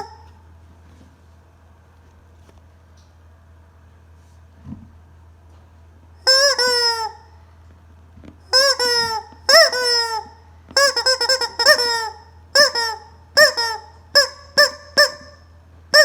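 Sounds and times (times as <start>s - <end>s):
rubber chicken toy squawking: 0.0s - 0.3s, 6.2s - 7.3s, 8.5s - 16.0s.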